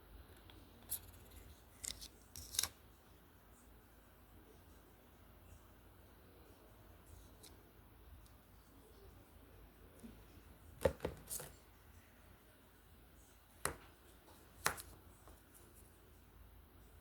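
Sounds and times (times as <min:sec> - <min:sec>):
faint room noise: 0:00.0 - 0:17.0.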